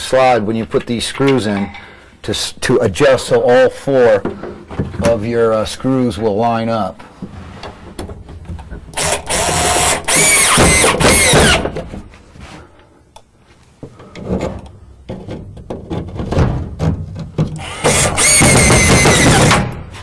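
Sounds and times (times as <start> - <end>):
power drill driving screws: 8.9 - 11.8, 17.6 - 19.8.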